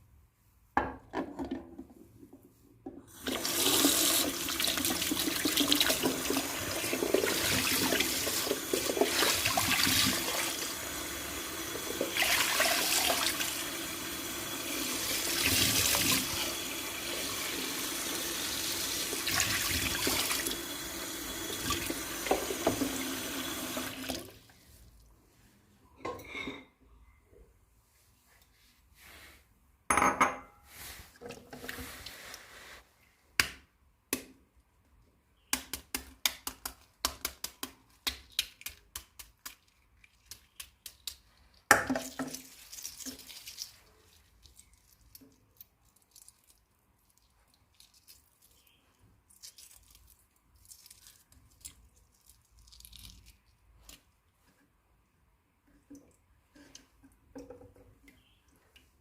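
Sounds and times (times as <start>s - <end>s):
dishes and cutlery clinking: 26.0s - 26.8s.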